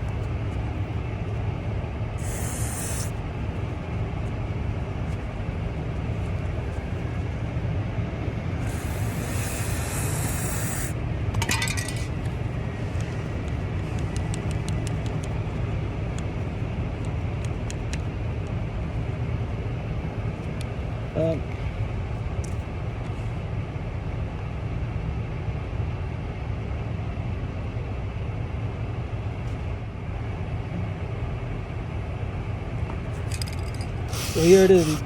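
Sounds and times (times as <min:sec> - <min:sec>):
aerosol can spraying: 0:02.2 - 0:03.7, 0:08.6 - 0:11.0, 0:33.3 - 0:35.0
brief rattle: 0:33.2 - 0:35.0.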